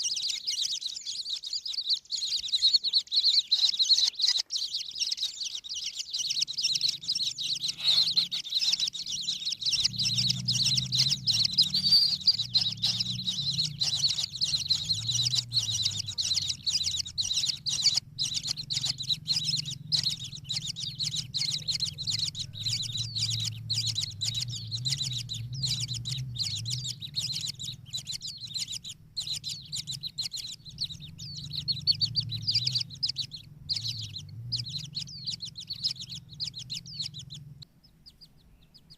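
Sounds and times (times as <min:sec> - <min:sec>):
birds chattering high chirps: 0:00.0 - 0:38.9
low hum: 0:06.8 - 0:37.7.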